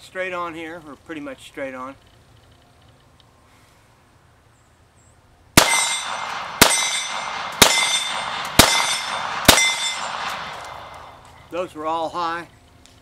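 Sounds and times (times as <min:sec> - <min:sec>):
metallic ring: 0:05.6 - 0:11.5
pistol shots: 0:05.6 - 0:11.5.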